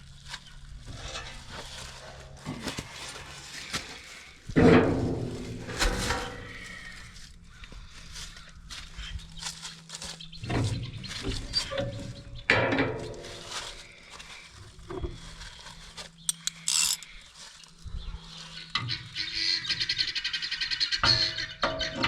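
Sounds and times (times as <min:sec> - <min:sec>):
metallic tool clanks and clicks: 0:16.3 - 0:17.2.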